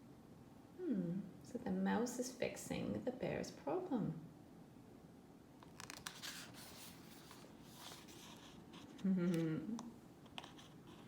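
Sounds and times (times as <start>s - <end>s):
woman vocal sound: 0.8s - 1.4s, 9.0s - 9.9s
light clicks of pages: 5.6s - 9.0s
paper rustling: 5.7s - 9.0s.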